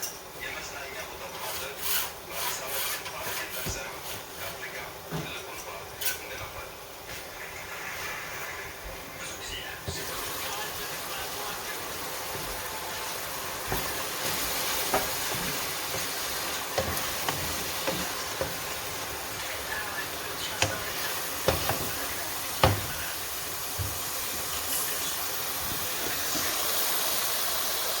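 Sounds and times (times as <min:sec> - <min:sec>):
food sizzling in a pot: 0:06.9 - 0:28.0
spoon knocking against pot: 0:13.7 - 0:19.2, 0:20.6 - 0:23.0.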